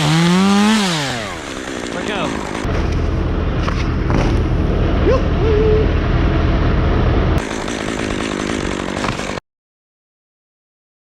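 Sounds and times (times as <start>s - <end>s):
chainsaw cutting tree: 0.0s - 4.6s, 7.4s - 9.4s.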